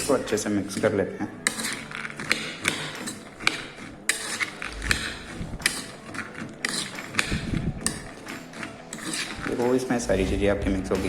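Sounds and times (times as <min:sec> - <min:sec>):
spoon clinking against bowl: 0:00.0 - 0:09.9.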